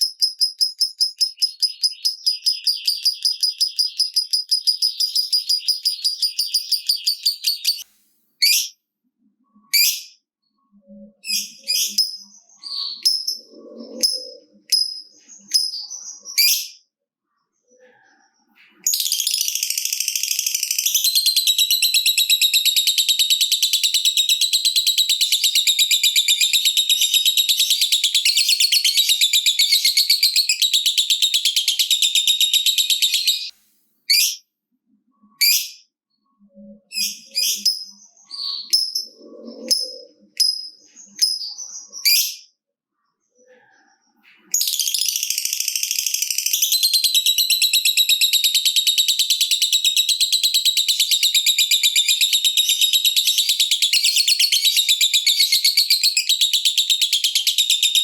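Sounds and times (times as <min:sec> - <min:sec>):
bird chattering trill: 0:00.0 - 0:07.8, 0:10.9 - 0:16.8, 0:37.0 - 0:42.4
short bird chirps: 0:00.0 - 0:21.9, 0:34.1 - 0:34.4, 0:35.1 - 0:46.9.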